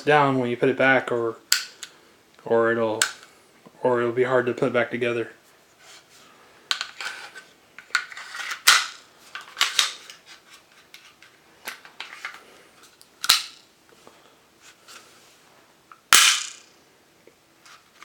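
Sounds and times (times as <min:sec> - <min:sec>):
pistol parts clicking into place: 0:01.5 - 0:02.0, 0:07.8 - 0:10.2, 0:13.2 - 0:13.6.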